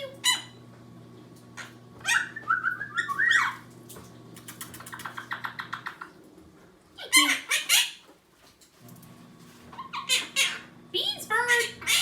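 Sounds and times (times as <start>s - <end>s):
parrot chirping and whistling: 1.6s - 3.6s.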